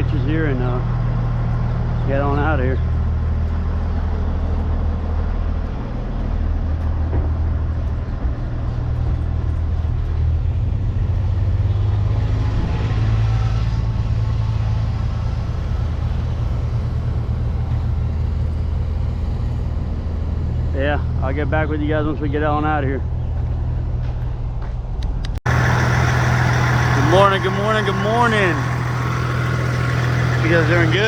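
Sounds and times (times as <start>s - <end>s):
diesel truck engine idling: 25.5s - 31.0s.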